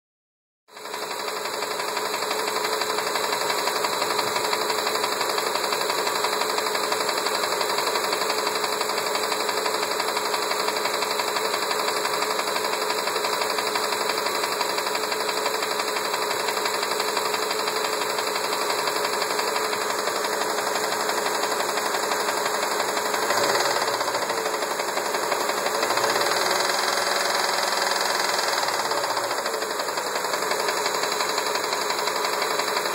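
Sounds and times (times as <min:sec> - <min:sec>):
engine knocking: 0:00.7 - 0:32.9
car engine running and revving: 0:14.9 - 0:32.9.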